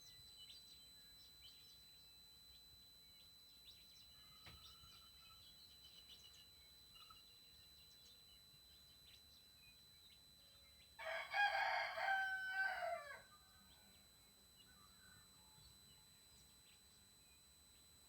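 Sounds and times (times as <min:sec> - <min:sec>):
rooster crowing: 0:11.0 - 0:13.6.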